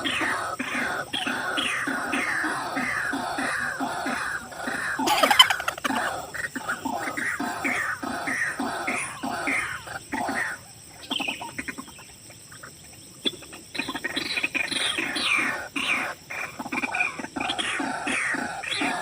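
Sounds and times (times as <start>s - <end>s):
waterhen calling: 0.0s - 11.9s.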